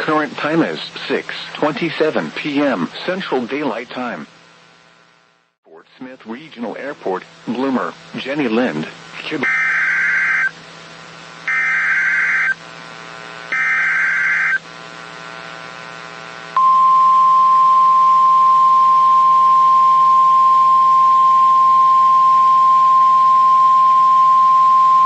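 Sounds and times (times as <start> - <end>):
screeching digital data bursts: 9.4 - 10.5, 11.5 - 12.6, 13.5 - 14.6
steady warning alarm tone: 9.4 - 10.5, 11.5 - 12.6, 13.5 - 14.6.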